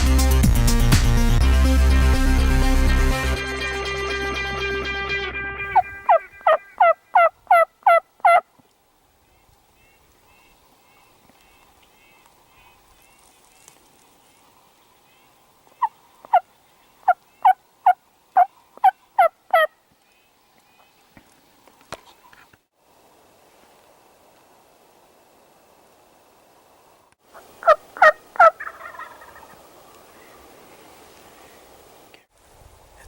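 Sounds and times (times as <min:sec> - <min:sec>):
turkey yelps: 0:05.7 - 0:08.4, 0:17.4 - 0:19.7, 0:27.6 - 0:29.6
faint songbird chirps: 0:09.2 - 0:17.6.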